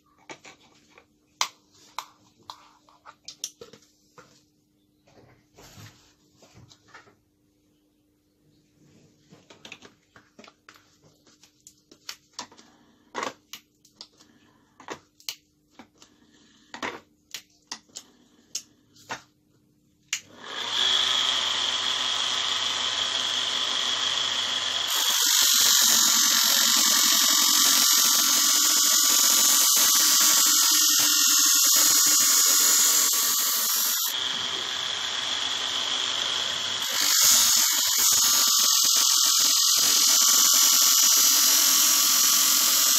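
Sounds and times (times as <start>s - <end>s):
electric knife sharpener running: 20.3s - 42.9s
blade grinding on abrasive wheel: 20.6s - 42.9s.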